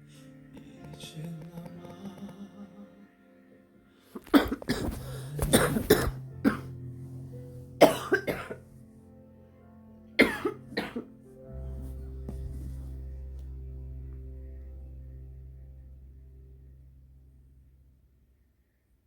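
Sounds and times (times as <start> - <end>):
quiet background music: 0.0 - 19.0
woman coughing: 4.3 - 6.7, 7.8 - 8.6, 10.2 - 11.1.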